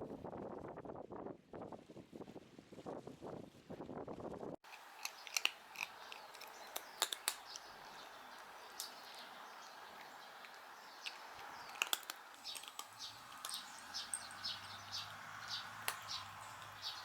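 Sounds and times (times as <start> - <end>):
small birds chirping: 4.6 - 17.0
sharp clicks: 4.7 - 14.4.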